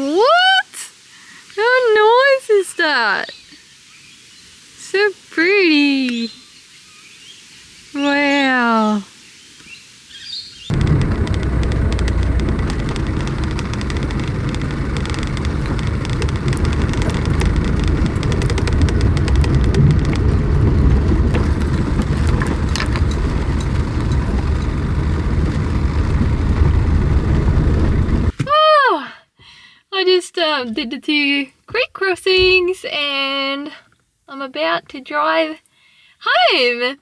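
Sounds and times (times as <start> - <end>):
knocks and rattles: 10.7 - 28.4
vehicle engine and tyres rumbling: 10.7 - 28.4.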